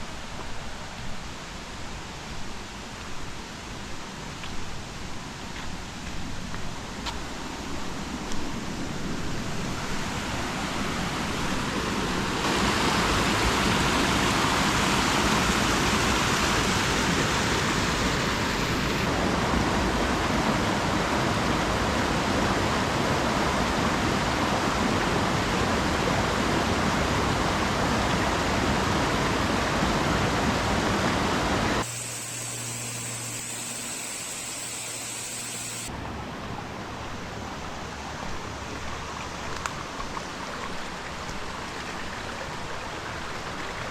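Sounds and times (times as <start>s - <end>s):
waterfall roaring: 8.6s - 36.1s.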